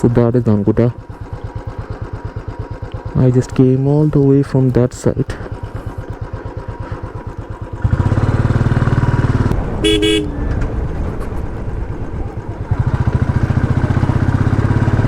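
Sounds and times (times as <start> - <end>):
motorcycle engine running: 0.0 - 15.0
two-tone vehicle horn toot: 9.8 - 10.4.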